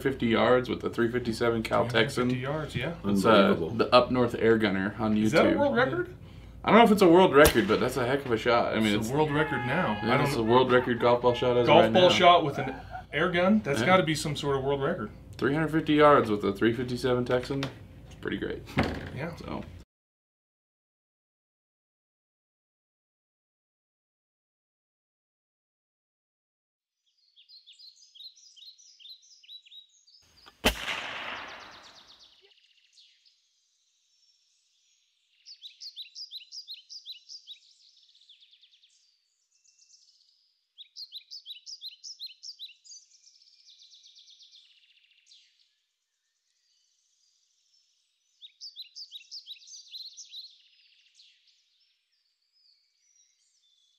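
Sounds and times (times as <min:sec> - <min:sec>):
air rifle firing: 0:07.4 - 0:08.1, 0:30.6 - 0:32.2
bird song trills: 0:27.0 - 0:30.6, 0:31.3 - 0:53.9.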